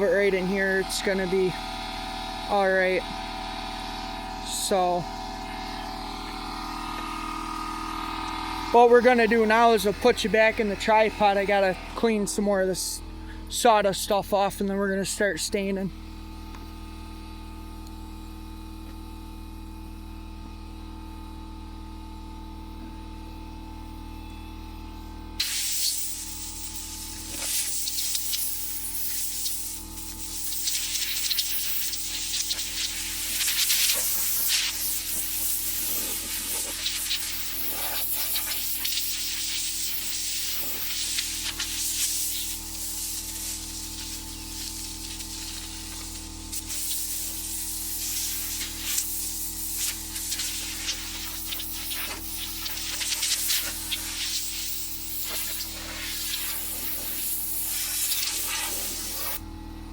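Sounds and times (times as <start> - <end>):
compressed air blow gun hissing: 25.4 - 59.4.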